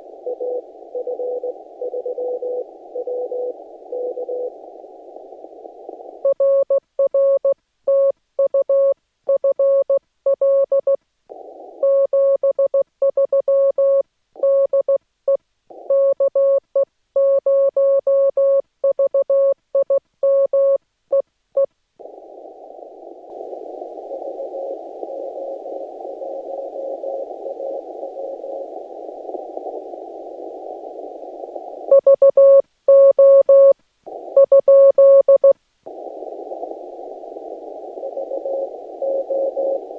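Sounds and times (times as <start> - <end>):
faint morse signal: 0.0 - 39.9
receiver hiss: 0.0 - 39.9.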